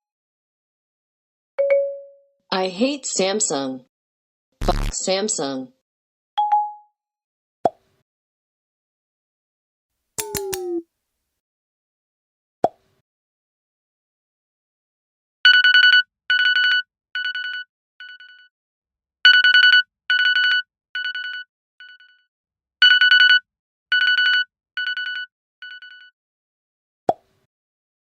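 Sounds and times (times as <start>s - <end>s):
trilling phone ringtone: 15.5s - 18.5s, 19.3s - 26.2s.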